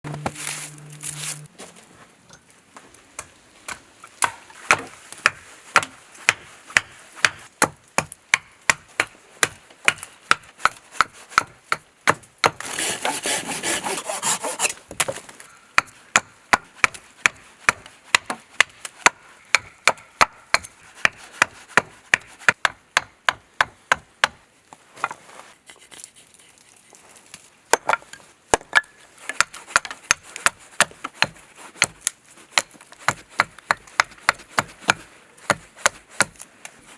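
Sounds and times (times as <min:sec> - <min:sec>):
wood rasping: 0:00.1 - 0:01.5, 0:12.5 - 0:14.8
carving tool chopping wood: 0:03.2 - 0:15.2, 0:15.8 - 0:24.4, 0:27.7 - 0:36.4.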